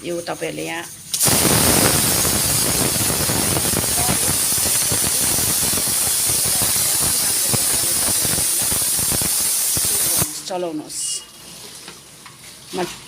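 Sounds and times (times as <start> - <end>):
chicken sizzling in hot oil: 1.2 - 10.3.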